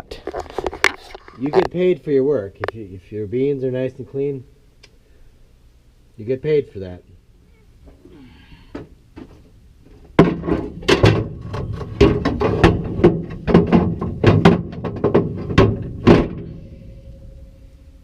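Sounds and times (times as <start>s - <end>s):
loud knocks and clunks on metal: 10.0s - 16.9s.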